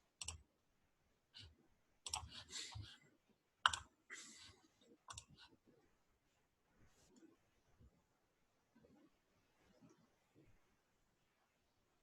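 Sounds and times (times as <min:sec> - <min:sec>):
faint clicks and taps: 0:00.1 - 0:00.5.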